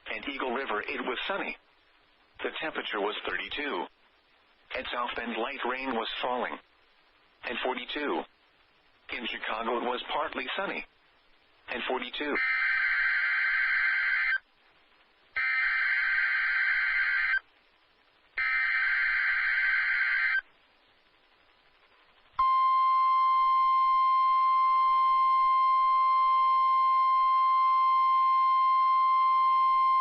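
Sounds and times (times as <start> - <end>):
piercing warning alarm tone: 18.4 - 20.4.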